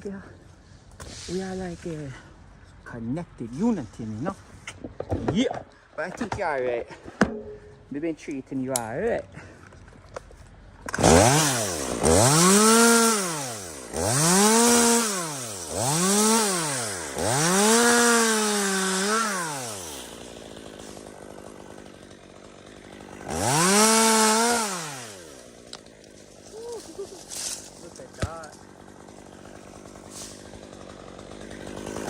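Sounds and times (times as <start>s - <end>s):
chainsaw revving: 10.9s - 32.0s.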